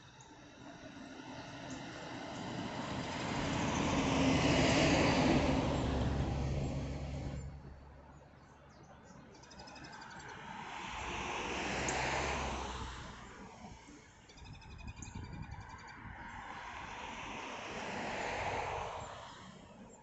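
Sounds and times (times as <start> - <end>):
car passing: 0.0 - 8.3, 9.9 - 14.2, 15.6 - 20.0
vehicle approaching: 0.0 - 8.4
faint bird chirps: 8.4 - 10.4, 14.1 - 16.4.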